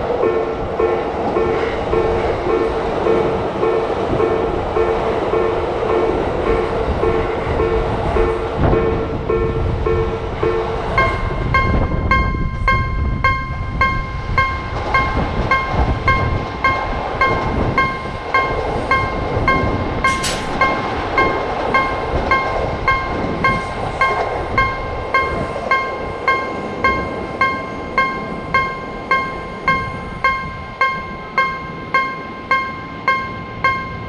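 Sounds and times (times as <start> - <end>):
railroad crossing bell ringing: 0.0 - 34.0
train rumble: 0.0 - 34.0.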